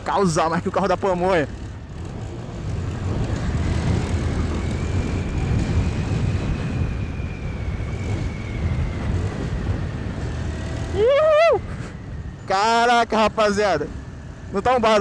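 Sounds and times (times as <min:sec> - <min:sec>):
small motorcycle engine running: 0:00.1 - 0:11.1.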